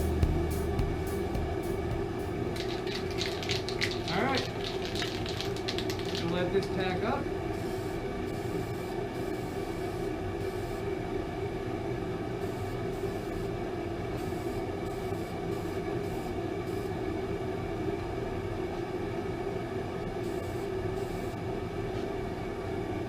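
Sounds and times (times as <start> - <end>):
machine drone humming: 0.0 - 4.0.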